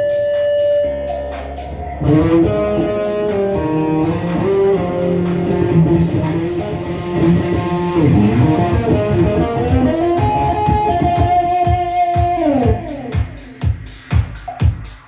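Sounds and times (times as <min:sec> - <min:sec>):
band playing: 0:00.0 - 0:14.6
electric guitar chords: 0:00.0 - 0:15.0.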